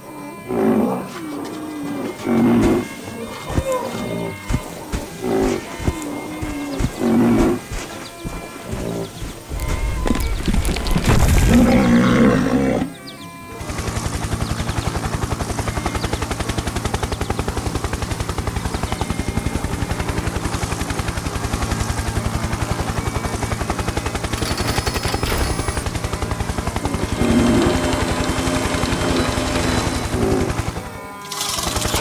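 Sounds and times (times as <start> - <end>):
rapid mechanical pulsing: 2.8 - 12.2, 13.5 - 32.0.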